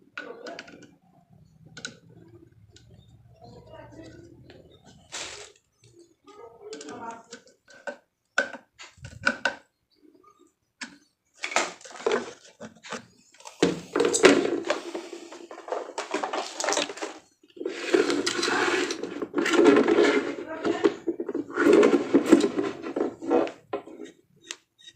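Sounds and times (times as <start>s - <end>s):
plastic parts clicking: 0.2s - 3.1s, 15.4s - 24.9s
packaging scraping and rustling: 4.9s - 5.7s, 11.4s - 20.6s.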